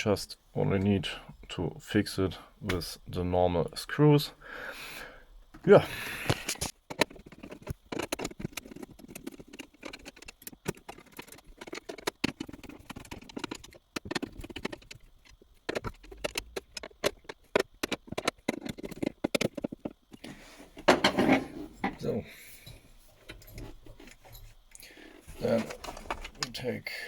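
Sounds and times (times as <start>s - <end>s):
small metal parts clicking: 6.3s - 20.2s.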